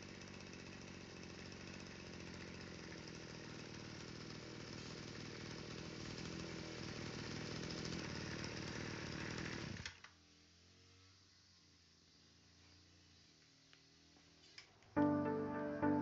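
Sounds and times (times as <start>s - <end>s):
brush cutter engine running: 0.0s - 10.1s.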